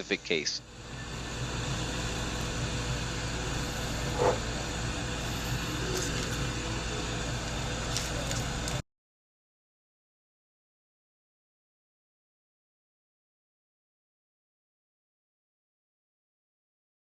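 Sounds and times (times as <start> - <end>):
electric fan whirring: 0.0 - 8.8
low hum: 0.0 - 8.8.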